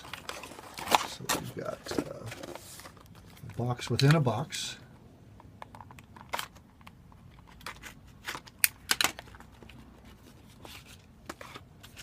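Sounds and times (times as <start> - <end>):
packaging crinkling and clicking: 0.0 - 4.2, 5.6 - 9.8.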